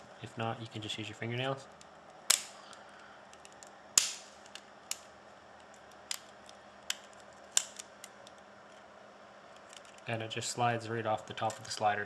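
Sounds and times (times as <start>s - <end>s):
plastic clips snapping loose: 1.8s - 2.6s, 3.3s - 8.4s.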